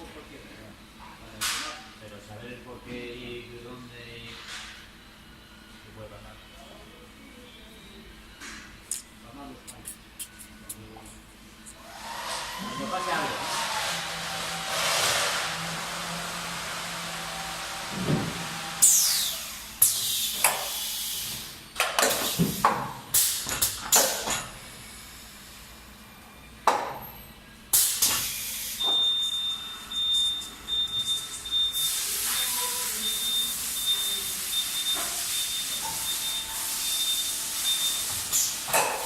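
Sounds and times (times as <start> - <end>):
pneumatic air hisses: 18.8 - 24.3, 27.7 - 29.1, 31.7 - 39.0.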